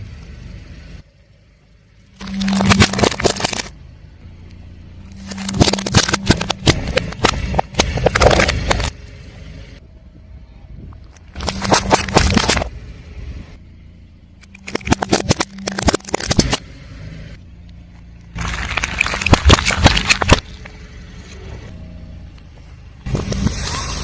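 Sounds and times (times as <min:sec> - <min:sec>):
low engine hum: 0:00.0 - 0:24.0
tyre crushing brittle objects: 0:02.2 - 0:03.7, 0:05.1 - 0:09.0, 0:11.4 - 0:12.7, 0:14.4 - 0:16.6, 0:18.3 - 0:20.8.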